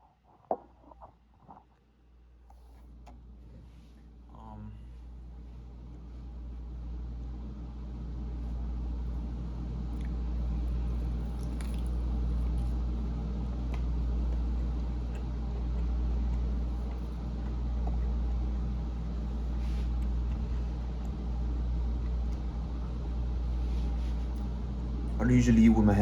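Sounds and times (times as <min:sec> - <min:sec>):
steady low rumble: 0:02.2 - 0:26.0
chewing and wet mouth clicks: 0:09.9 - 0:18.4.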